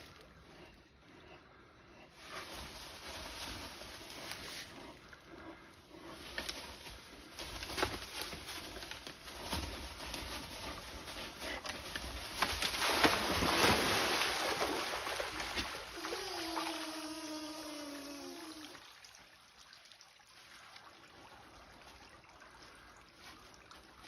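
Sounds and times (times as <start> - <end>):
rustling: 2.2 - 16.2.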